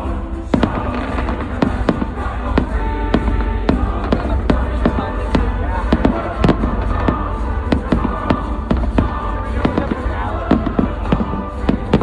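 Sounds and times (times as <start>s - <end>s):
low rumble: 0.0s - 12.0s
show music: 0.0s - 12.0s
fireworks bangs and crackles: 0.5s - 12.0s.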